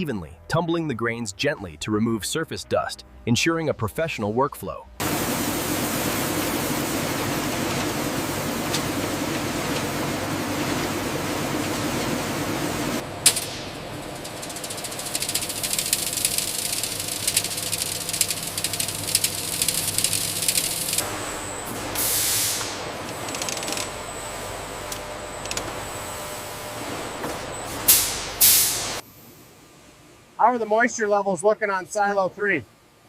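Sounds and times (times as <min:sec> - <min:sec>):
low machinery hum: 0:04.9 - 0:33.0
mill machinery rushing: 0:05.0 - 0:22.0
rapid machinery clatter: 0:07.0 - 0:21.0.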